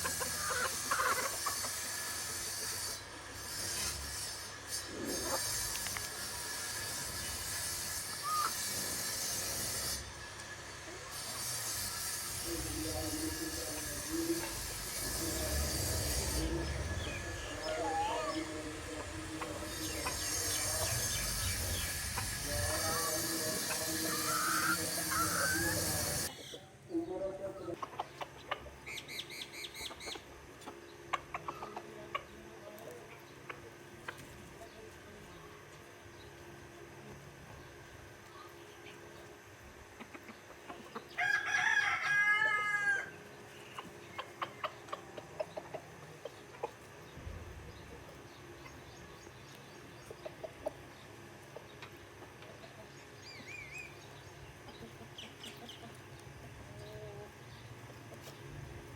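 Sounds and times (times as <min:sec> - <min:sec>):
chickens clucking: 0:00.0 - 0:58.9
steady high hiss: 0:11.8 - 0:26.3.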